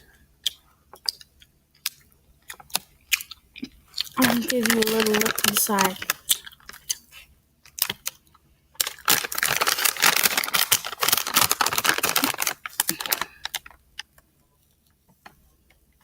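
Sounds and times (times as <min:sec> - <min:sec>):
plastic container clicking and rustling: 0:04.0 - 0:06.9, 0:08.8 - 0:13.8.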